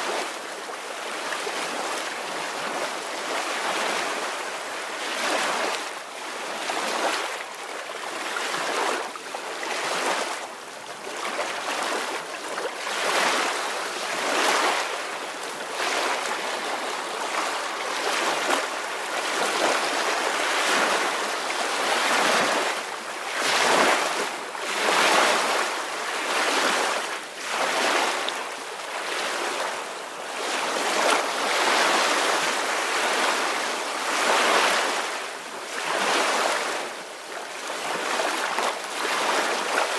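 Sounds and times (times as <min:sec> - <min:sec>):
ocean waves washing onto shore: 0:00.0 - 0:39.9.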